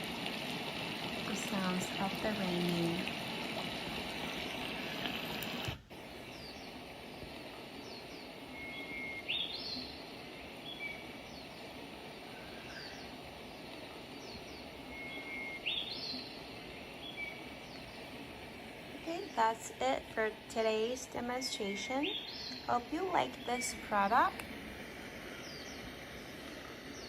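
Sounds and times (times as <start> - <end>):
rain sound from speaker: 0.0 - 27.0
steady background hiss: 0.0 - 27.0
bird chirps and calls: 21.4 - 24.2.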